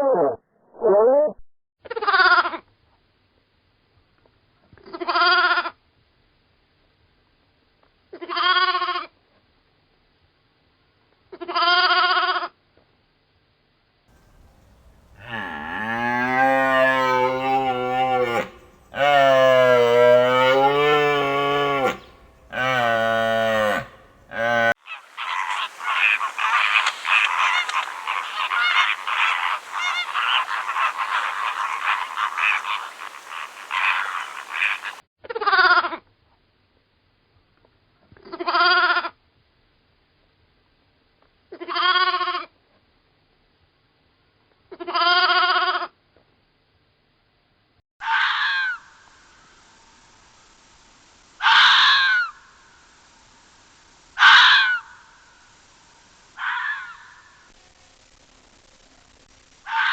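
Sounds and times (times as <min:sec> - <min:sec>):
waterfowl flock calling: 0:14.2 - 0:35.0, 0:51.4 - 0:52.5, 0:54.2 - 0:55.2, 0:56.4 - 0:57.3.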